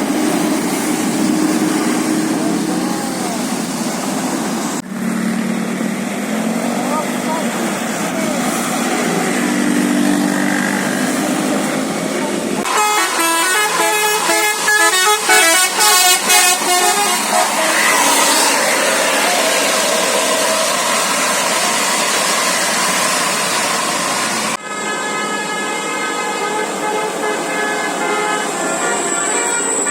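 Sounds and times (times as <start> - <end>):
rush of noise: 0.0 - 12.7, 16.6 - 24.6
musical air horn melody: 12.6 - 20.8, 24.5 - 29.9
low drone: 17.1 - 24.7.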